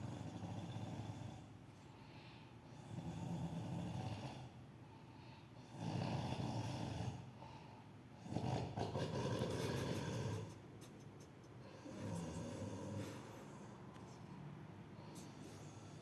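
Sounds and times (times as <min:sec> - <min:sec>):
quiet breathing: 0:00.0 - 0:05.8, 0:06.8 - 0:08.2, 0:11.6 - 0:16.0.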